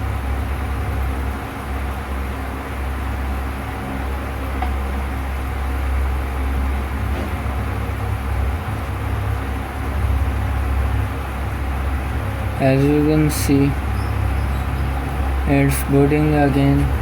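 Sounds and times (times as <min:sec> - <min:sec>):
low droning hum: 0:00.0 - 0:17.0.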